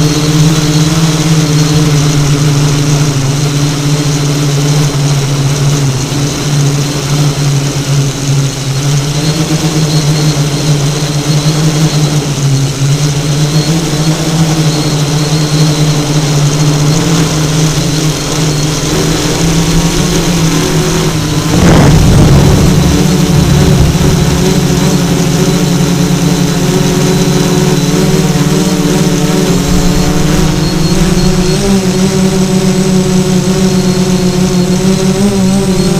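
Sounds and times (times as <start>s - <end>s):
drone motors humming: 0.0s - 35.9s
brief rush of noise: 20.1s - 26.2s.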